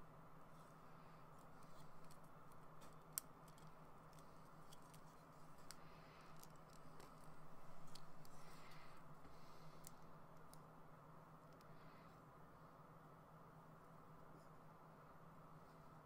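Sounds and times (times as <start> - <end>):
steady low hum: 0.0 - 16.0
plastic parts clicking together: 1.6 - 8.4.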